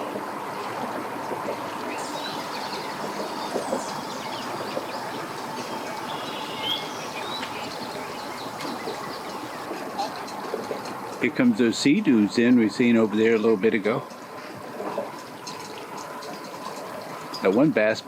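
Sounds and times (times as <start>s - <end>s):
birds chirping: 2.0s - 9.7s
mechanical background hum: 2.0s - 9.7s.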